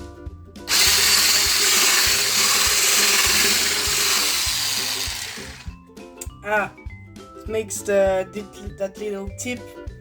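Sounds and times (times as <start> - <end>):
electric hand mixer whirring: 0.7 - 5.7.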